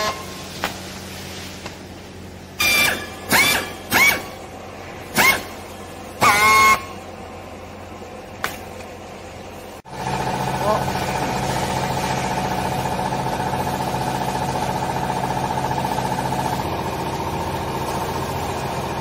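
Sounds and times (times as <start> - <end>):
low machine hum: 0.0 - 19.0
horn honks rising in pitch: 6.2 - 7.0.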